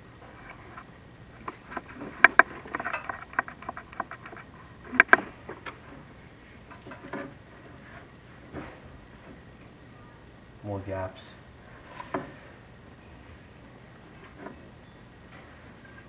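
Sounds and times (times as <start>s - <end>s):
camera cable scraping in flue: 0.3s - 5.8s
light rattling: 0.4s - 8.0s
sharp clicks: 0.8s - 5.8s.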